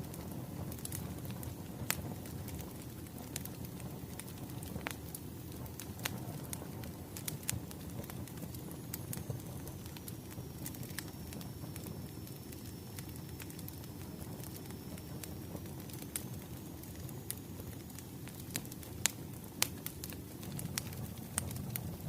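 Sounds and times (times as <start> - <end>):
firewood crackling and popping: 0.0 - 22.0
wood fire burning: 0.0 - 22.0.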